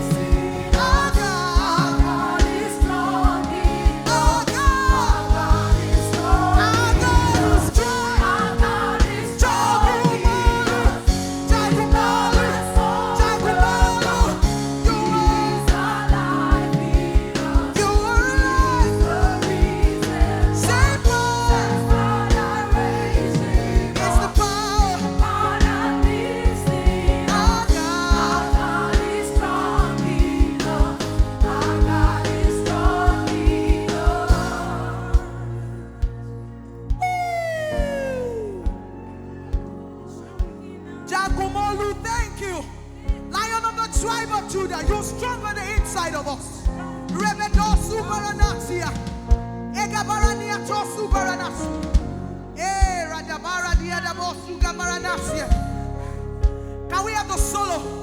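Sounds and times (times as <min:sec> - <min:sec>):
steady drum beat: 0:00.0 - 0:36.3
keyboard chords: 0:00.0 - 0:58.0
person singing: 0:37.0 - 0:38.8.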